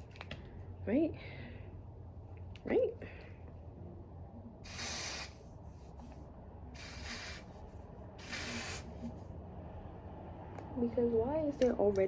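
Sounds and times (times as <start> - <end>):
hair spray hissing: 4.6 - 6.2, 6.8 - 9.2.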